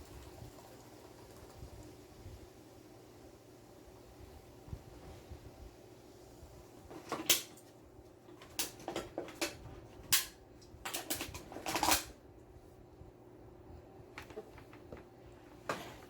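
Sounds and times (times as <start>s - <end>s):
objects clicking and rattling: 10.9s - 12.1s.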